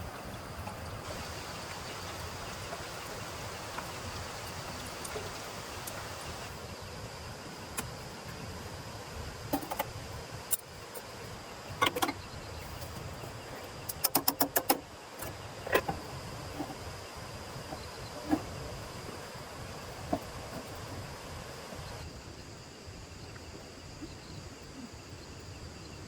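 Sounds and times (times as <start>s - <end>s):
high insect-like hum: 0.0s - 26.0s
sharp knocks and clicks: 13.9s - 16.8s.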